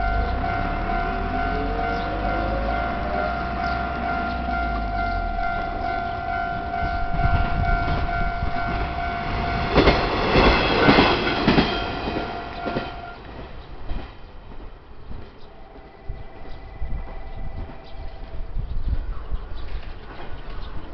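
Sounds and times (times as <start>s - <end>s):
level-crossing warning bell: 0.0s - 13.3s
train wheels clacking on rails: 0.0s - 18.2s.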